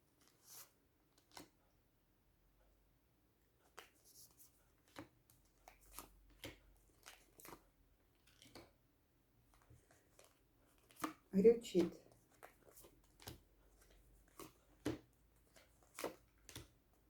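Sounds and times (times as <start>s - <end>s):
cards rustling and clicking: 0.2s - 1.6s, 3.6s - 8.8s, 9.4s - 16.8s.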